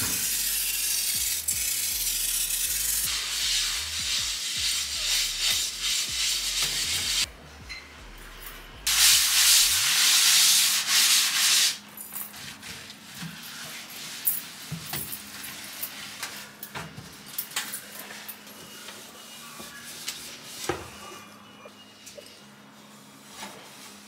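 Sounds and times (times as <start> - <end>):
scrubbing kitchen surface: 3.1 - 7.3, 8.9 - 16.5.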